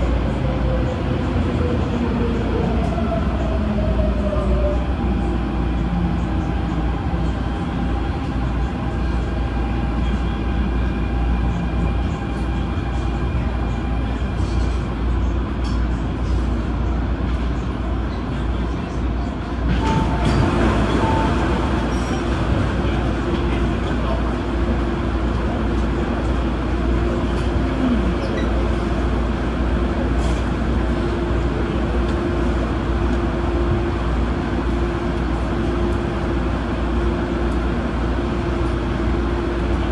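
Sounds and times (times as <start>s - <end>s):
train rumble: 0.0s - 39.9s.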